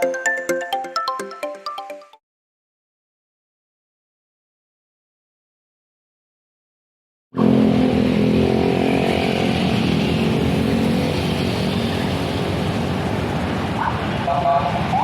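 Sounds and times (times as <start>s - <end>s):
bus engine running: 9.5s - 15.0s.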